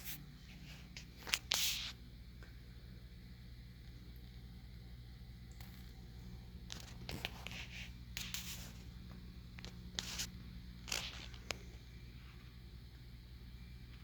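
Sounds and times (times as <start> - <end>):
low steady hum: 0.0 - 14.0
scraping and rustling handling noise: 9.6 - 11.8.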